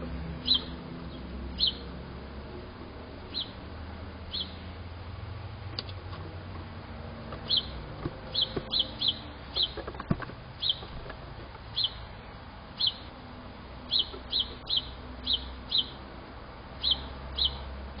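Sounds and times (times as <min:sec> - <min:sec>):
small animal chirping: 0:00.4 - 0:00.8, 0:01.6 - 0:01.9, 0:03.3 - 0:03.6, 0:04.3 - 0:04.6, 0:07.4 - 0:09.8, 0:10.6 - 0:10.9, 0:11.7 - 0:12.1, 0:12.8 - 0:13.1, 0:13.9 - 0:16.0, 0:16.8 - 0:17.7.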